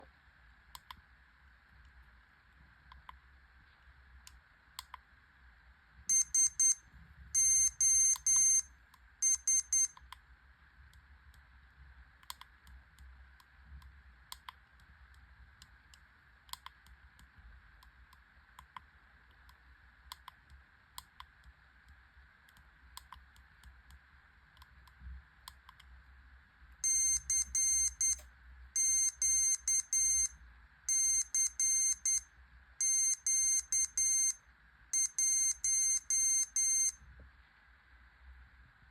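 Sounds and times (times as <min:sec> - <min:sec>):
morse code beeps: 0:06.1 - 0:06.8, 0:07.4 - 0:08.6, 0:09.2 - 0:09.9, 0:26.8 - 0:28.2, 0:28.8 - 0:30.3, 0:30.9 - 0:32.2, 0:32.8 - 0:34.4, 0:35.0 - 0:37.0.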